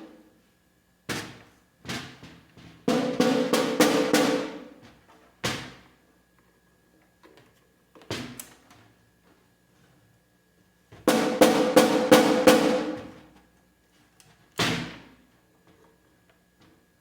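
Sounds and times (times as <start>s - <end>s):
snare drum hits: 2.9s - 4.7s, 11.1s - 13.2s.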